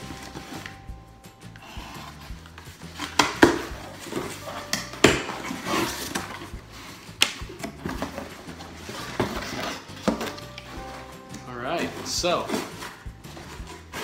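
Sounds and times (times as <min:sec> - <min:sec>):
plastic parts clacking and knocking: 0:02.0 - 0:14.0
packaging rustling: 0:07.8 - 0:14.0.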